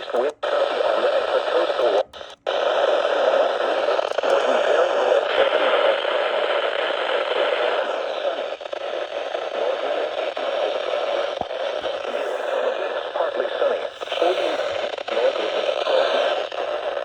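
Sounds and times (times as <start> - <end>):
radio static hiss and crackle: 0.0 - 17.0.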